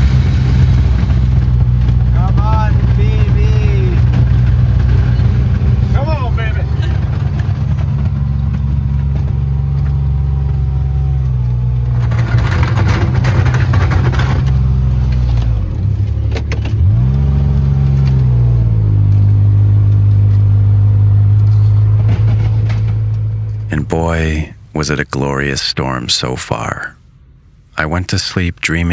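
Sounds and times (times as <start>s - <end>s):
rushing noise: 0.0s - 7.4s
small engine running under load: 0.0s - 23.6s.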